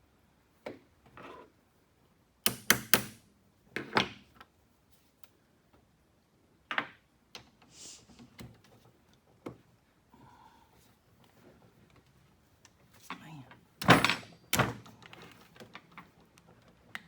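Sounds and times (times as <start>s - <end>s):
short hiss: 7.7s - 8.3s
metal parts clinking and knocking: 13.8s - 14.6s.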